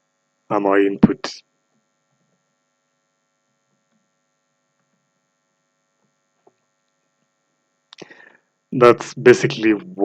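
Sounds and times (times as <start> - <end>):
faint electrical hum: 0.0 - 10.0.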